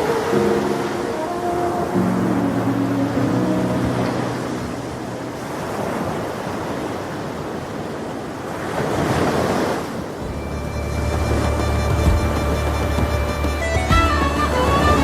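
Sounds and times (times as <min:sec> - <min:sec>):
ocean surf washing: 0:00.0 - 0:15.0
music with low bass: 0:10.3 - 0:15.0.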